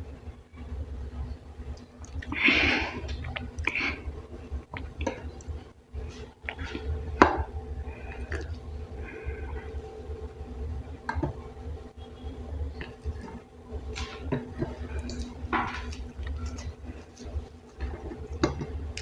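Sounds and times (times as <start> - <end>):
low steady hum: 0.0 - 19.0
food squishing: 1.6 - 19.0
person chewing: 1.8 - 9.9, 12.8 - 19.0.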